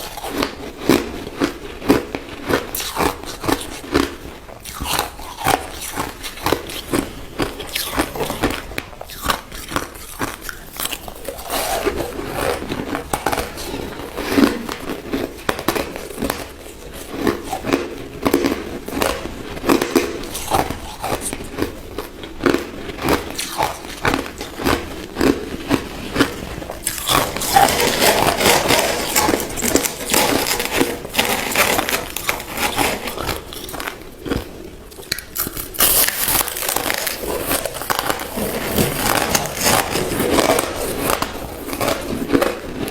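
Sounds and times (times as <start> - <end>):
crushed ice being chewed: 0.0 - 42.9.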